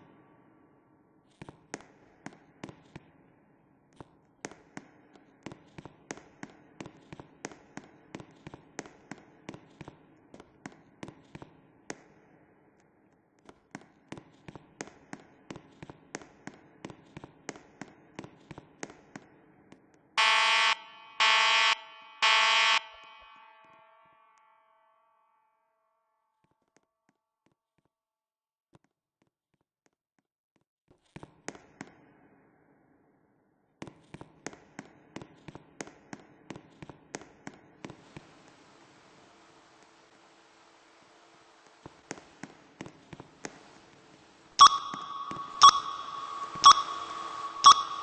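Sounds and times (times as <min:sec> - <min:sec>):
loud electronic beeps: 0:20.2 - 0:23.7, 0:44.6 - 0:48.0
faint steady hum: 0:38.0 - 0:48.0.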